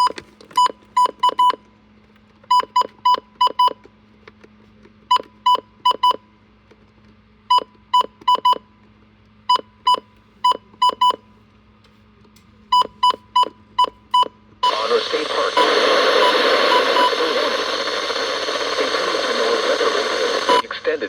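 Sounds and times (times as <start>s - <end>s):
weather alert radio beeps: 12.8s - 21.0s.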